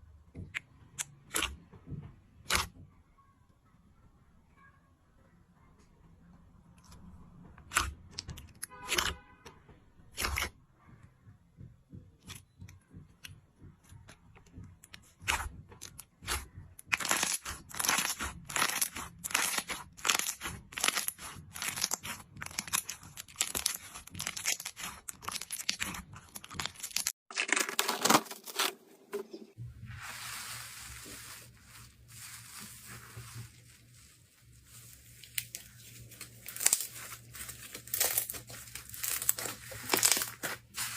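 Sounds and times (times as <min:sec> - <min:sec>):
slime crinkling: 0:15.0 - 0:28.7, 0:29.8 - 0:40.9
slime crackling and popping: 0:15.2 - 0:27.5, 0:35.2 - 0:40.9.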